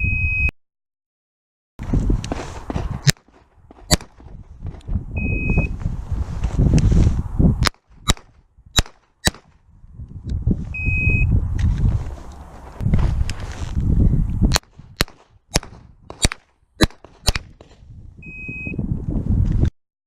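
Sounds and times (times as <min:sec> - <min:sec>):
short electronic beeps: 0:00.0 - 0:00.5, 0:05.2 - 0:05.7, 0:10.7 - 0:11.3, 0:18.2 - 0:18.8
pistol shots: 0:03.9 - 0:04.2, 0:07.6 - 0:09.5, 0:14.5 - 0:17.8.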